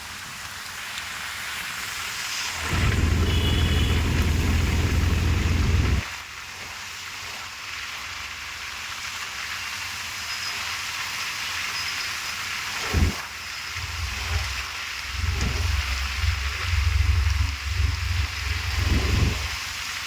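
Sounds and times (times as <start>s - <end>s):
heavy rain hissing: 0.1s - 6.5s, 11.0s - 20.0s
loud low rumble: 2.6s - 6.0s, 13.8s - 19.8s.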